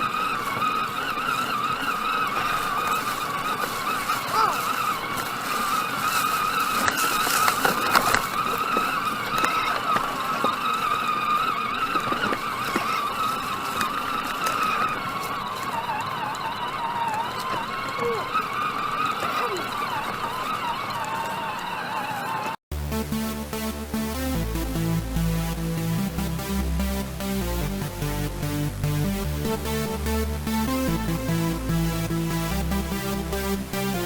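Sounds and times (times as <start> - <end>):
small electric motors whining: 0.0 - 22.6.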